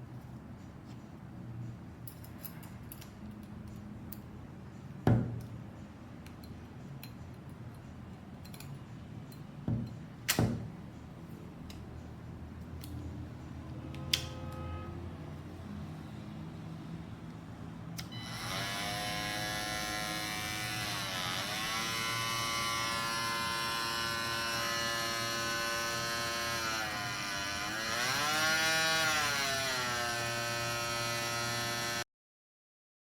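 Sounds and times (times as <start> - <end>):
oscillating multi-tool buzzing: 18.0 - 32.0.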